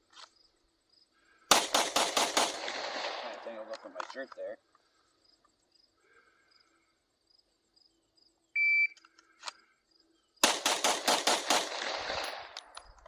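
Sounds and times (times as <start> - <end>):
rapid pistol shots: 1.5 - 3.8, 10.4 - 12.8
electronic beep: 8.6 - 9.0.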